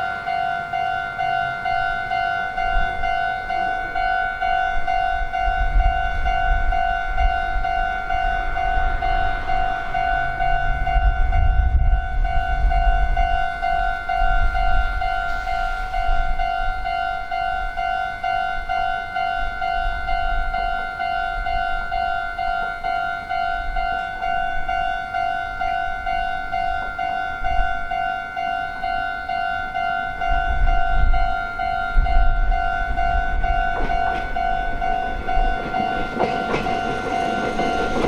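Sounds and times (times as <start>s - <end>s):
level crossing bell ringing: 16.6s - 38.0s.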